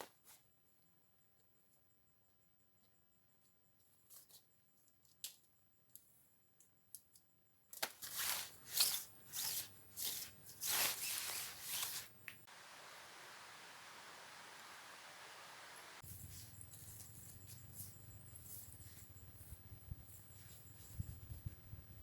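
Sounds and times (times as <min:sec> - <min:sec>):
rustling and crinkling: 0:07.8 - 0:12.5, 0:16.0 - 0:21.8
steady hiss: 0:08.1 - 0:22.0.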